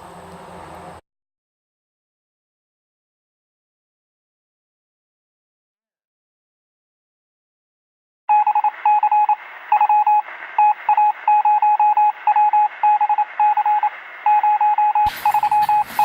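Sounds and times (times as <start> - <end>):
morse code beeping: 8.3 - 16.0.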